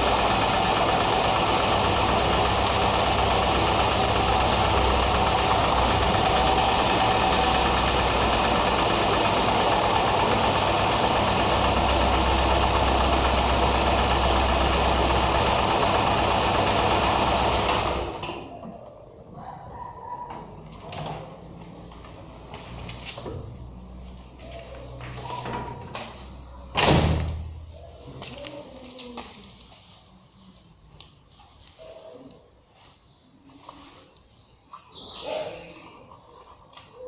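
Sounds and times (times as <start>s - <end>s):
car engine running: 0.0s - 18.2s.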